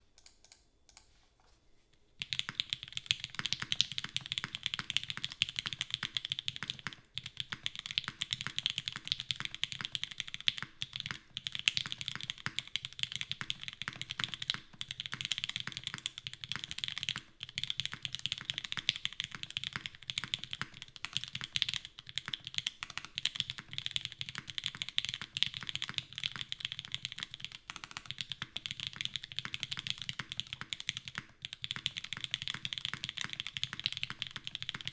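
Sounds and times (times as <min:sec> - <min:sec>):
fast typing on mechanical keyboard: 0:02.2 - 0:34.9.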